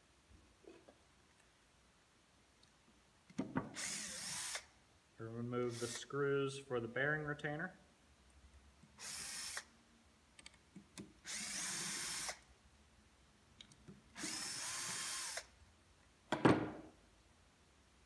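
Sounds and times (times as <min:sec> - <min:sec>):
power drill running: 0:03.8 - 0:04.6, 0:09.0 - 0:09.7, 0:11.3 - 0:12.4, 0:14.2 - 0:15.5.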